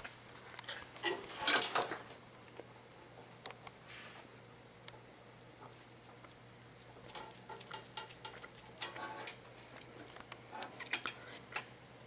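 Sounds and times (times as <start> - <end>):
tools and metal parts clicking: 6.8 - 9.4.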